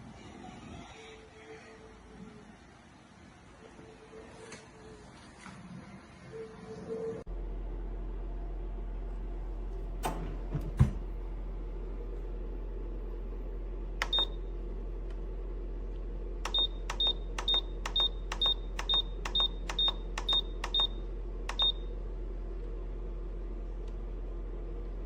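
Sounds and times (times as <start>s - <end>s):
steady low hum: 7.2s - 25.0s.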